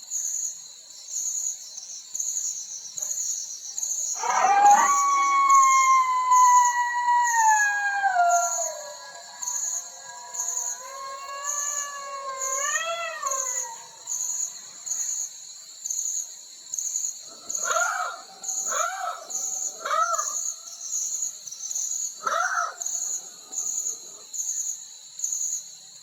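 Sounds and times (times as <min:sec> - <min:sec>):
insects chirping: 0:00.0 - 0:26.0
dog howling and yelping: 0:04.2 - 0:14.0.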